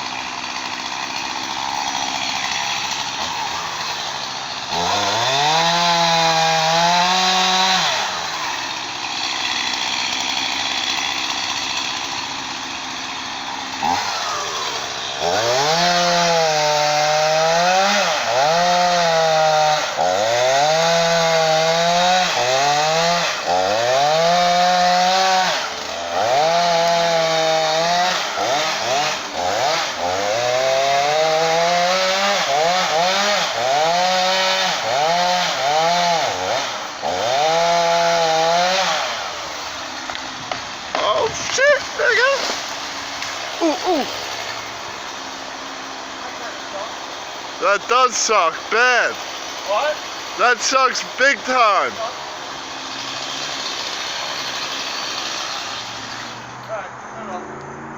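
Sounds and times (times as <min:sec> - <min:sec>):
chainsaw engine revving: 0:00.0 - 0:57.9.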